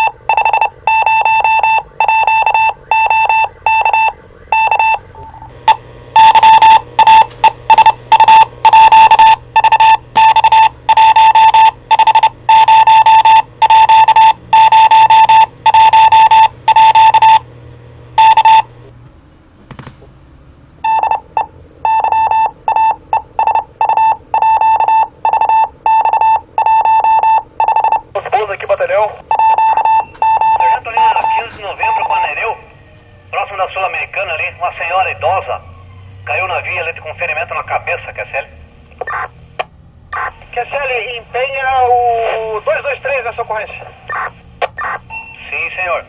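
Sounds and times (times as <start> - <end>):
high-pitched electronic beeps: 0.0 - 5.1.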